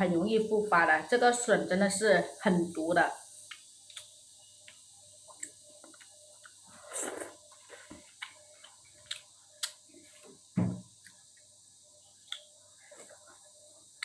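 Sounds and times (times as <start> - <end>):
dull knock: 10.6 - 10.8.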